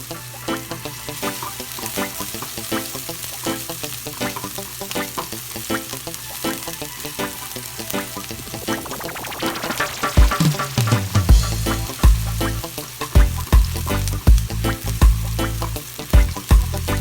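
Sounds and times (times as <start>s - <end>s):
food sizzling in a pan: 0.0s - 17.0s
background music with a beat: 7.9s - 17.0s.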